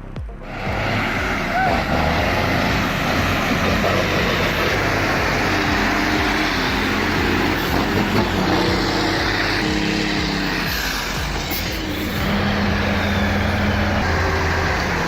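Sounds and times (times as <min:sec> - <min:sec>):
heavy vehicle engine running: 0:00.0 - 0:15.0.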